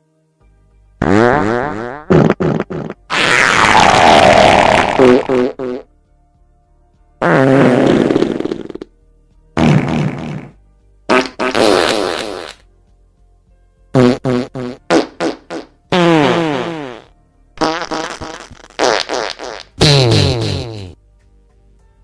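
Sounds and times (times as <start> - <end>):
fart sounds: 1.0 - 5.9, 7.2 - 8.9, 9.6 - 12.7, 13.9 - 21.0.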